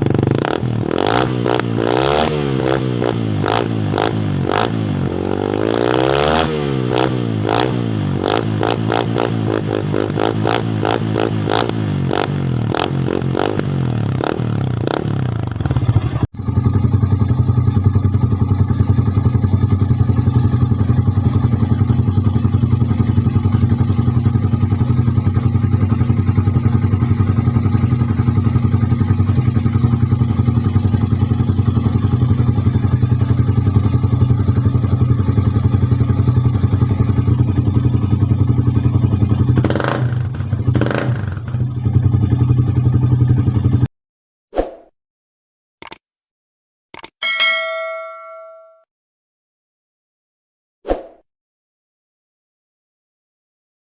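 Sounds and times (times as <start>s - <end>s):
motorcycle engine idling unmuffled: 15.5s - 39.6s.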